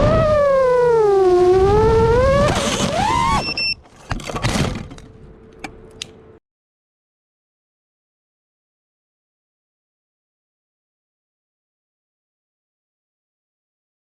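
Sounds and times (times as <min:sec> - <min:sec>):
drone motors whining: 0:00.0 - 0:03.8.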